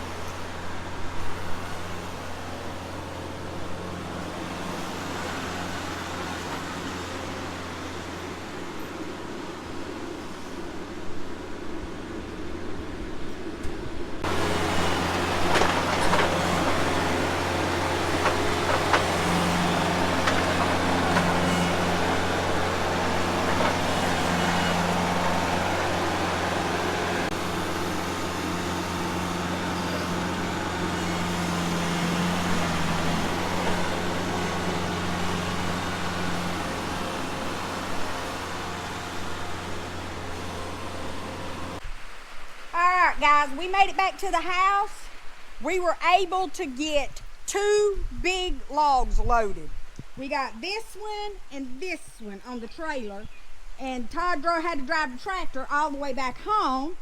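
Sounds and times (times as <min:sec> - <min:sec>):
tractor diesel engine running: 0:00.0 - 0:12.9, 0:13.8 - 0:41.8
knocks and clunks: 0:14.2 - 0:25.5.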